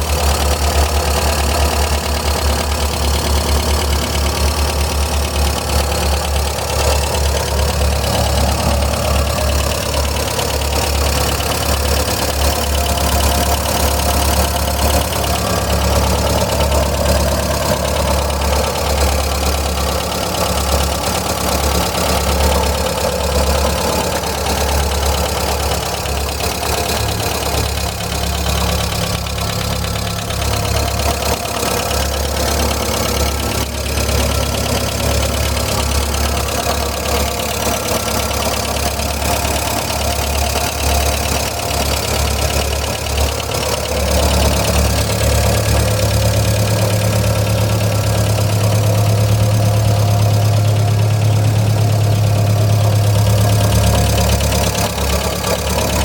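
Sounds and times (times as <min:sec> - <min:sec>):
engine idling: 0:00.0 - 0:56.0
engine knocking: 0:00.0 - 0:56.0.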